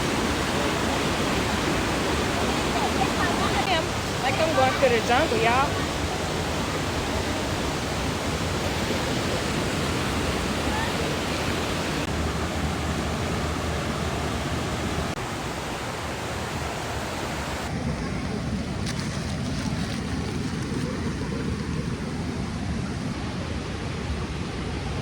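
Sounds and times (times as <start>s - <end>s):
waterfall rushing: 0.0s - 17.8s.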